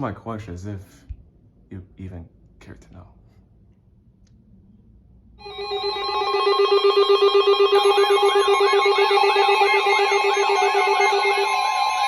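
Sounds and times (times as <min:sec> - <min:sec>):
rapidly pulsing alarm tone: 0:05.4 - 0:12.0
warbling alarm tone: 0:05.4 - 0:12.0.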